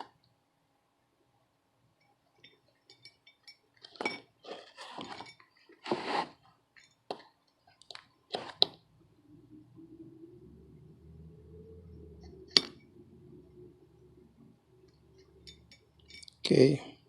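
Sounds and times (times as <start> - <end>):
short scrapes: 5.8 - 6.4
low steady hum: 8.6 - 17.0
small metal tools clinking: 15.2 - 16.8.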